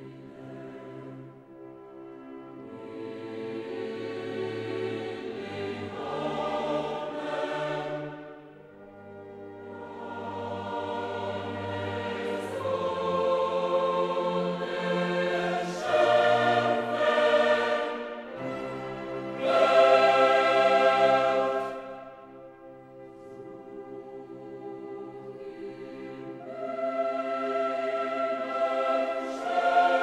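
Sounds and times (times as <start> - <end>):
choir singing sustained chords: 0.0 - 30.0.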